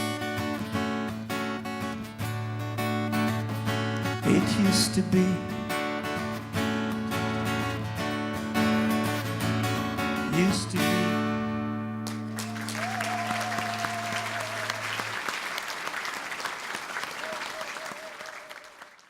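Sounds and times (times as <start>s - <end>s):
acoustic guitar strumming: 0.0s - 12.4s
audience applause: 12.0s - 19.0s.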